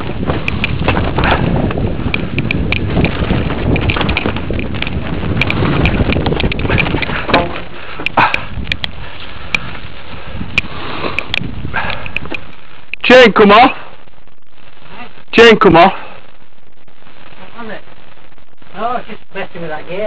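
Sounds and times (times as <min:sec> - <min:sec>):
bike riding over rough track: 0:00.0 - 0:12.5
bike rattling clicks and knocks: 0:00.0 - 0:12.6
wind buffeting microphone: 0:00.0 - 0:13.0.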